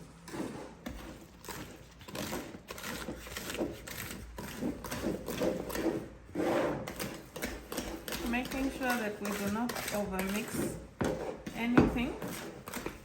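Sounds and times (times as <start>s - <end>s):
batter stirring and scraping: 0.0s - 13.0s.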